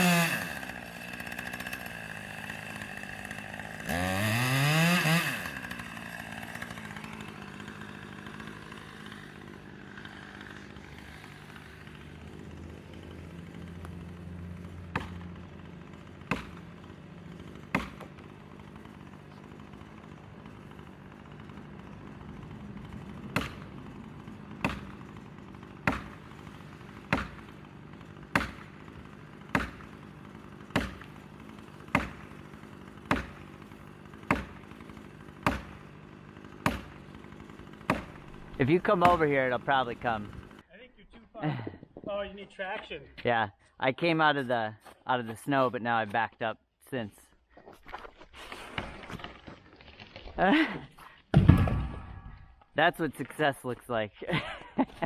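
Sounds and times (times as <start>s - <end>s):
chainsaw: 0.0s - 40.7s, 44.0s - 46.1s, 48.6s - 55.0s
hammer striking wedge: 27.1s - 27.4s, 28.3s - 28.7s, 30.8s - 31.1s, 36.6s - 37.0s.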